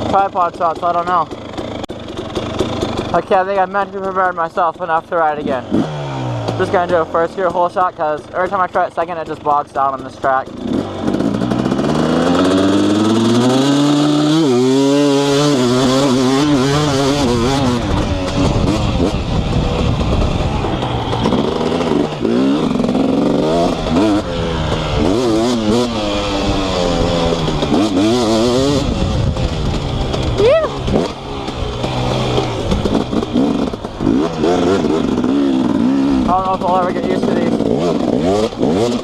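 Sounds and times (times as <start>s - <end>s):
two-stroke motorcycle engine revving: 0.0s - 39.0s.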